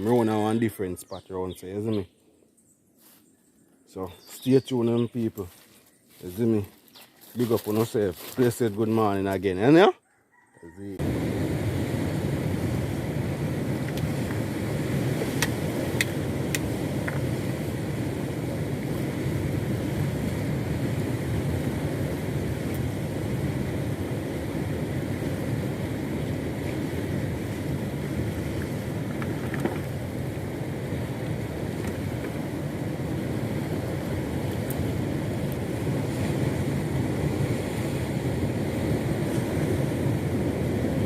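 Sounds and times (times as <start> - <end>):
outboard motor drone: 11.0 - 41.0.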